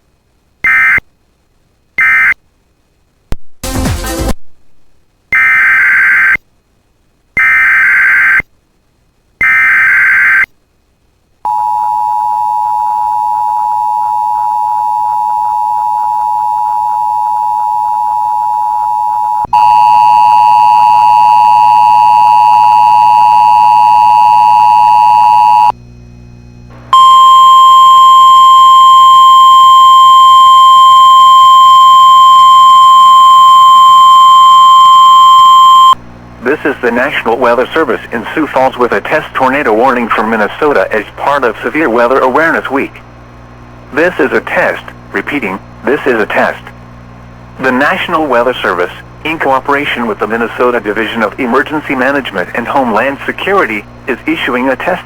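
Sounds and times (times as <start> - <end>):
two-tone attention signal: 11.5 - 25.7.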